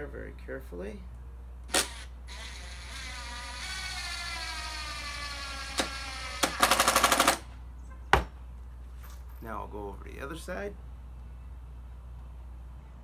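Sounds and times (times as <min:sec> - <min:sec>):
impact driver motor whining: 0:01.7 - 0:07.5.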